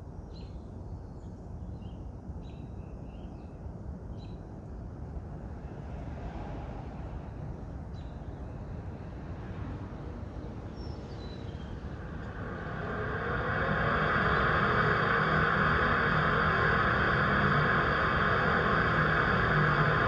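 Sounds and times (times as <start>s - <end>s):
vent fan rushing air: 10.0s - 20.0s.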